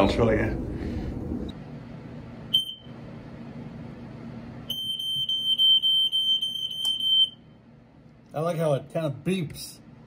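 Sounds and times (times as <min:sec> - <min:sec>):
smoke alarm chirp: 0:02.5 - 0:03.0, 0:04.7 - 0:07.6
smoke alarm pulsing tone: 0:02.5 - 0:03.0, 0:04.6 - 0:07.6.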